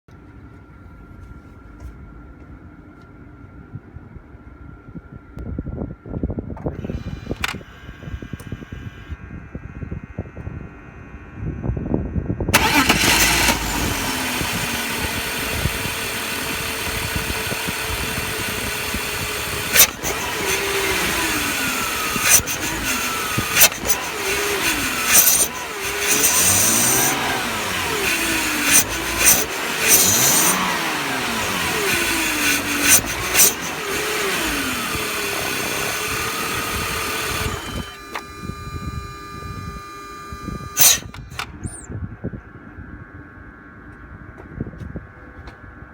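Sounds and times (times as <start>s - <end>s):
sharp clicks: 6.6s - 7.7s, 12.6s - 41.9s
car engine revving and idling: 12.5s - 41.8s.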